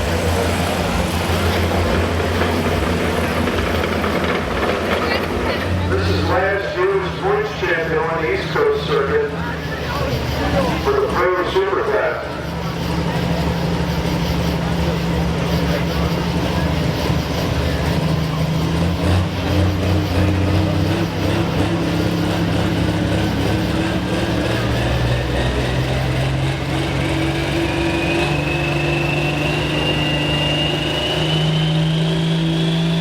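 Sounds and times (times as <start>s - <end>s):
tractor engine running loudly: 0.0s - 33.0s
thin high whine rising in pitch: 23.5s - 33.0s.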